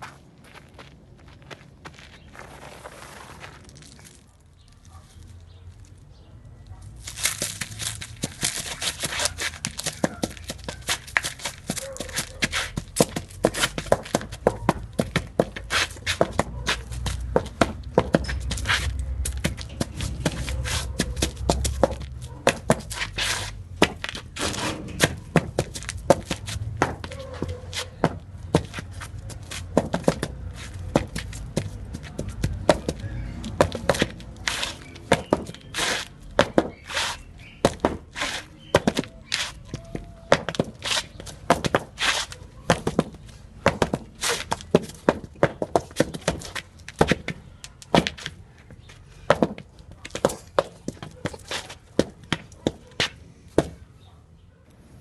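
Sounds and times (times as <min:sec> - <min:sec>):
shoe strikes on a floor: 0:23.8 - 0:48.3.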